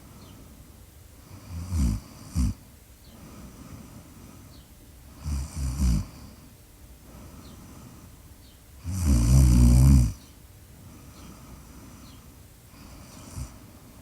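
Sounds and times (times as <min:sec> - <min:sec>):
snorts: 0:01.3 - 0:02.6, 0:05.2 - 0:06.4, 0:08.8 - 0:10.2
person snoring: 0:01.4 - 0:02.6, 0:05.2 - 0:06.1, 0:08.8 - 0:10.2
soft breathing: 0:03.0 - 0:05.3, 0:06.0 - 0:08.4, 0:10.7 - 0:14.0.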